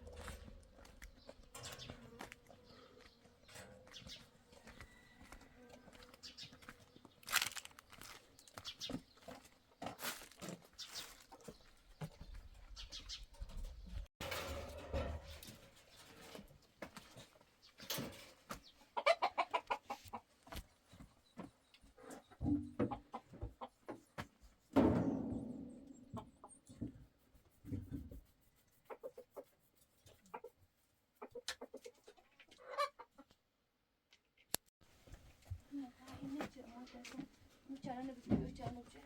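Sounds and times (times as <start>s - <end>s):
chickens clucking: 18.6s - 20.4s, 22.0s - 24.0s, 25.4s - 26.8s, 28.8s - 29.4s, 30.1s - 30.6s, 31.2s - 33.4s.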